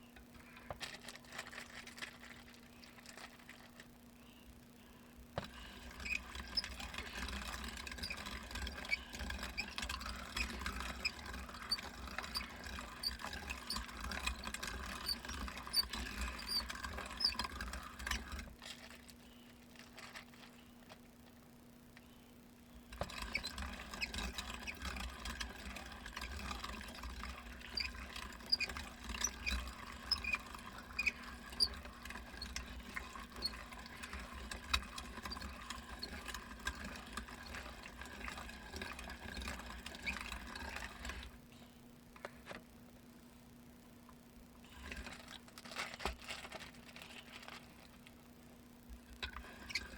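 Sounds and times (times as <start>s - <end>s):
meat grinder hum: 5.4s - 18.6s, 22.9s - 41.3s
grinding squeaks and ticks: 5.4s - 18.8s, 22.7s - 41.4s, 44.6s - 47.6s, 49.1s - 49.9s.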